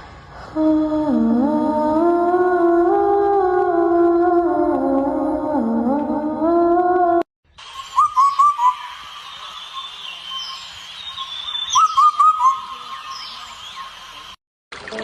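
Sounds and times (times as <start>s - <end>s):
bird whistling upswept notes: 7.5s - 14.4s
high-pitched background hiss: 7.5s - 14.4s.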